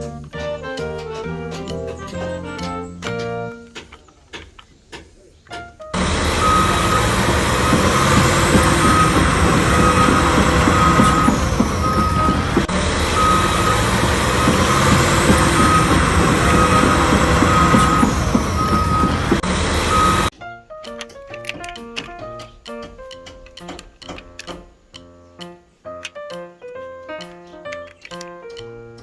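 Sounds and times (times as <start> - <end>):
reversing alarm beeping: 6.0 - 20.3
truck engine running: 6.0 - 20.3.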